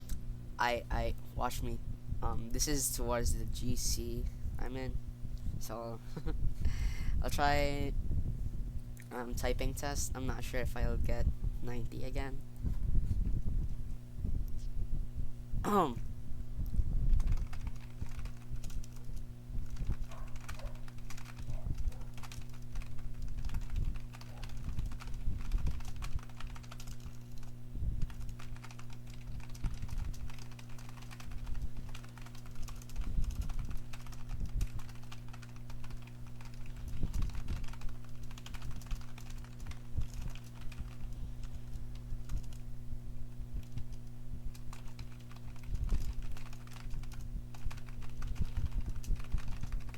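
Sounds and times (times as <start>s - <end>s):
low electrical hum: 0.0s - 49.9s
keyboard keys clacking: 19.8s - 27.2s.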